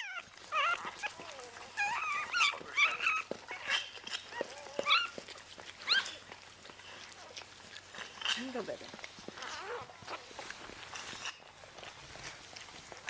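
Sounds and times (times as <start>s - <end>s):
newborn puppy squealing: 0.0s - 5.2s, 5.8s - 6.2s, 9.4s - 10.3s.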